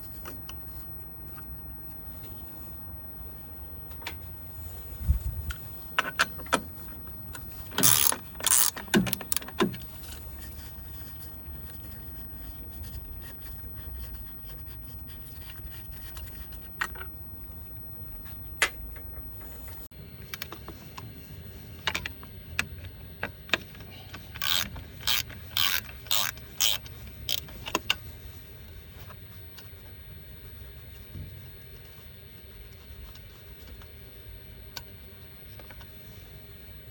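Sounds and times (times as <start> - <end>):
low background hum: 0.0 - 36.9
ratchet bursts: 7.8 - 9.6, 24.4 - 27.8.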